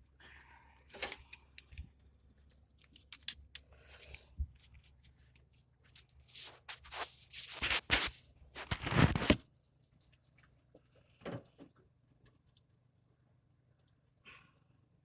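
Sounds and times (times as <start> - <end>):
rustling scrapes and clatters: 3.9 - 9.4.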